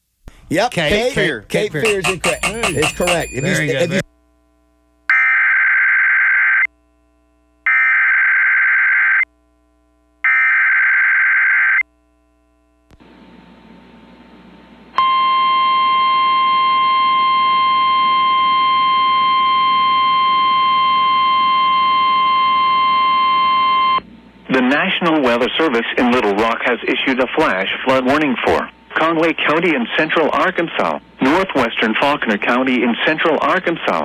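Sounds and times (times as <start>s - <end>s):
steady alarm tone: 1.8s - 4.0s, 5.1s - 6.7s, 7.6s - 9.2s, 10.2s - 11.8s, 15.0s - 24.0s.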